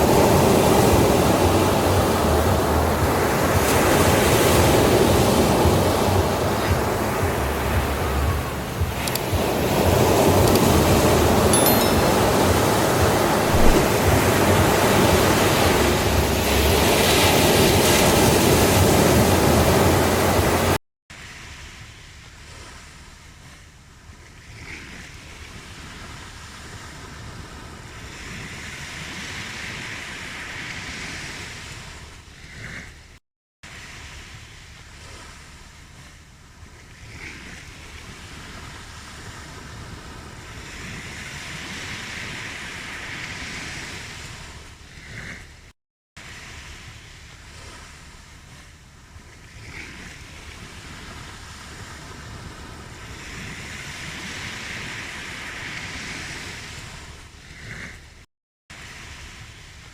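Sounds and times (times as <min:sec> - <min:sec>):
ocean surf breaking on shore: 0:00.0 - 0:21.8, 0:37.5 - 0:45.5, 0:49.6 - 0:58.0, 0:58.8 - 0:59.9.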